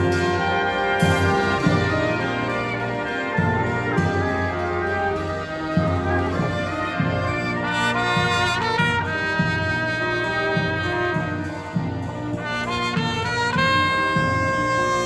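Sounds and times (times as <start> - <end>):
low drum beat: 0.0 - 14.7
brass marching band: 0.0 - 15.0.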